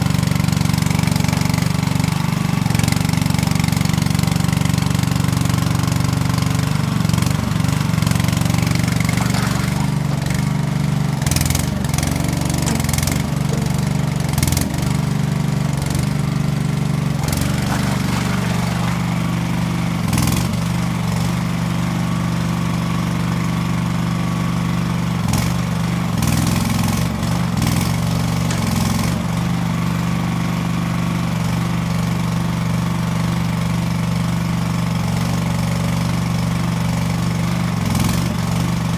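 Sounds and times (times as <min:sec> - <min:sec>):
loader engine running: 0:00.0 - 0:38.9
sharp metal clanks: 0:12.4 - 0:15.2.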